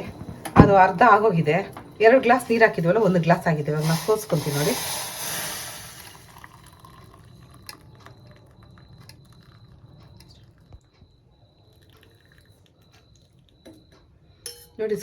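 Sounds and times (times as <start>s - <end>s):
liquid trickling and dripping: 5.9s - 13.9s.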